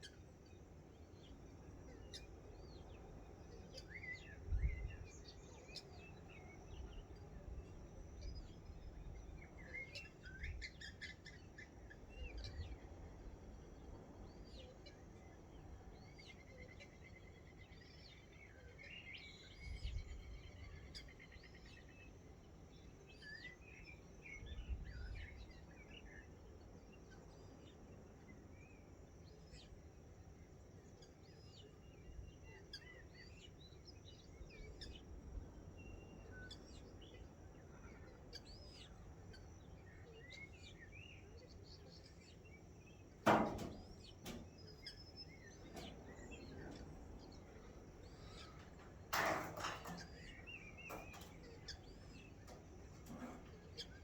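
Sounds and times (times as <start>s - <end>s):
birds chirping and whistling: 43.5s - 54.0s.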